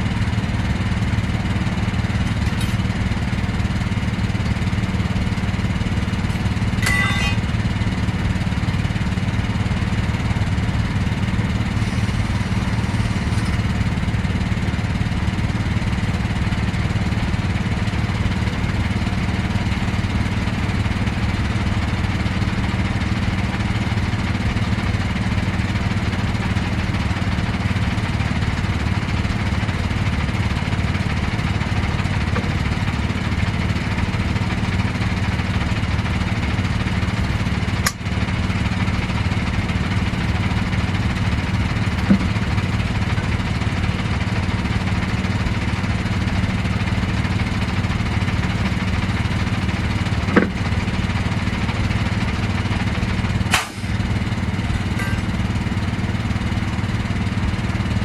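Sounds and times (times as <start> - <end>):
engine idling: 0.0 - 58.0
sharp knocks: 6.8 - 7.5, 42.0 - 42.4, 50.3 - 50.7.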